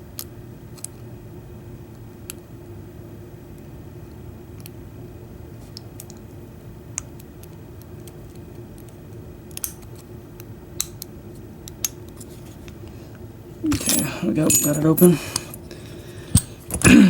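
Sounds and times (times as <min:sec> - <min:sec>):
faint low hum: 0:12.0 - 0:17.0.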